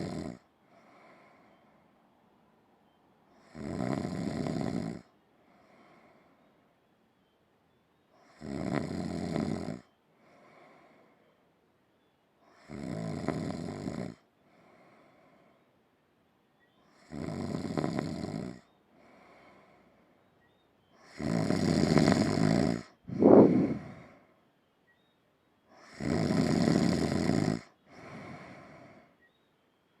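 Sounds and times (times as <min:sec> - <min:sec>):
person snoring: 0:00.0 - 0:01.4, 0:03.4 - 0:06.1, 0:08.2 - 0:09.8, 0:12.5 - 0:14.2, 0:17.0 - 0:19.6, 0:21.0 - 0:24.2, 0:25.8 - 0:29.1
sharp snort: 0:21.0 - 0:24.2.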